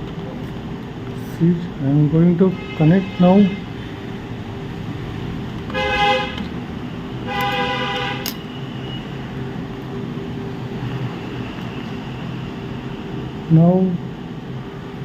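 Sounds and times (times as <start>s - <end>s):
steady background hum: 0.0s - 15.0s
vehicle horn honking: 2.5s - 3.6s, 5.7s - 6.5s, 7.2s - 9.0s.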